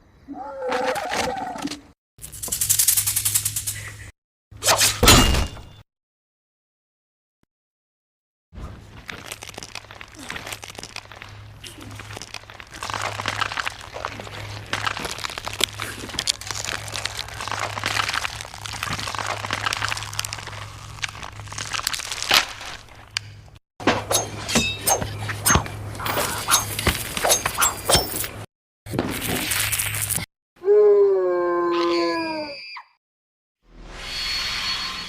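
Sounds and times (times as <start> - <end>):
dense crunching and crackling: 8.6 - 23.6
sharp cracks and breaking impacts: 8.8 - 23.6.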